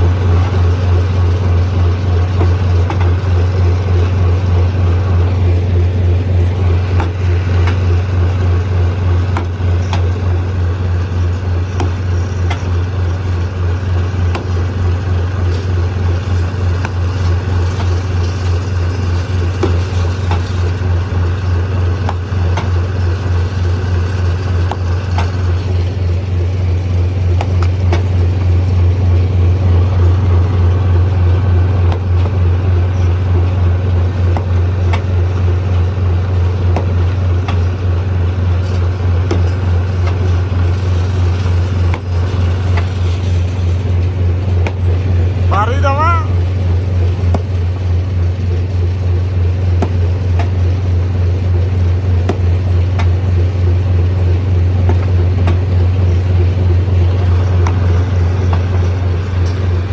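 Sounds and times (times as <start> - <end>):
stone crusher droning: 0.0 - 59.9
sharp clicks and knocks: 0.3 - 3.4, 9.1 - 10.4, 11.0 - 14.8, 49.7 - 50.8, 52.2 - 53.6, 54.8 - 59.9.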